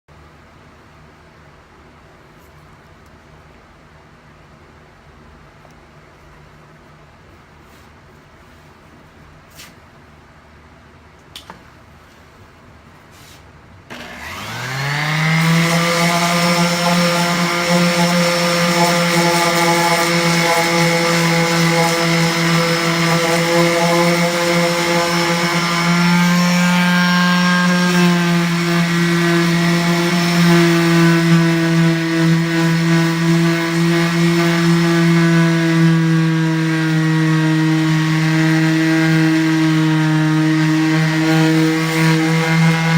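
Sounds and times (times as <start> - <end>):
power tool motor running: 13.9 - 42.9.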